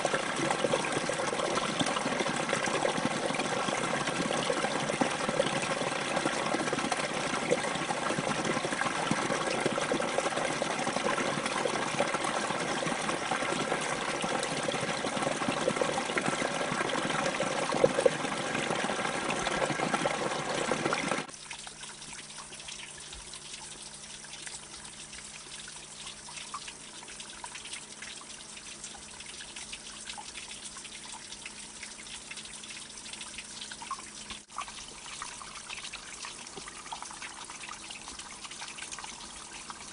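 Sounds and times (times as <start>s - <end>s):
flowing water rushing: 0.0s - 21.3s
small water drips: 0.0s - 39.9s
water trickling: 0.0s - 39.9s.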